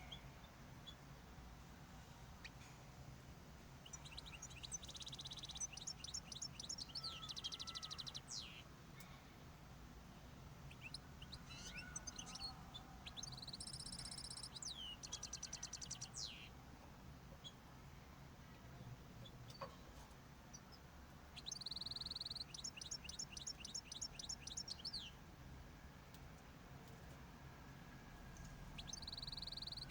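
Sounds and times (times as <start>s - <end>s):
faint steady hum: 0.0s - 29.9s
finches singing: 3.8s - 9.2s, 10.5s - 16.6s, 20.5s - 25.2s, 28.3s - 29.9s.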